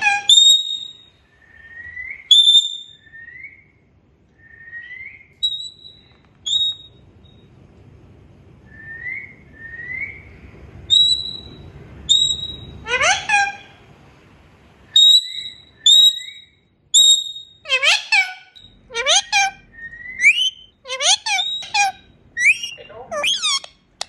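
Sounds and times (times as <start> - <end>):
parrot squawk: 0.0 - 1.1, 12.1 - 13.8, 15.0 - 23.8
parrot whistling and chirping: 0.0 - 3.8, 4.4 - 7.4, 8.7 - 13.7, 14.9 - 23.8.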